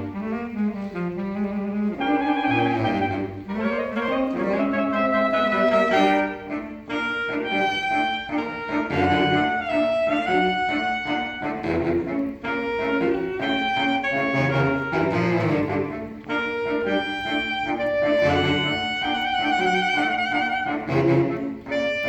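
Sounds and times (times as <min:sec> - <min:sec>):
saxophone quartet playing: 0:00.0 - 0:22.0.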